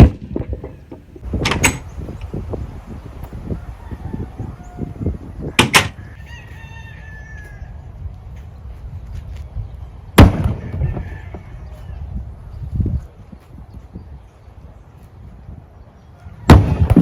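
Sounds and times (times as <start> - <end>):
rooster crowing: 3.5 - 7.9, 10.5 - 12.1
sharp knocks: 5.6 - 6.0
steady low rumble: 7.5 - 15.9
heavy loud impact: 10.2 - 11.0.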